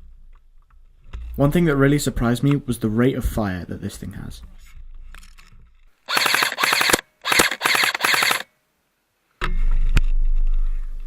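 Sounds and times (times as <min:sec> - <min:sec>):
airsoft gun full-auto bursts: 0:06.1 - 0:08.5.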